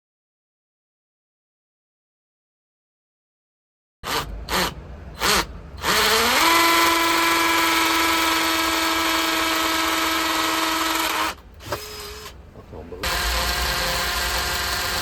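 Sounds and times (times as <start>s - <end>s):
power drill whining: 4.0s - 12.4s, 13.0s - 15.0s.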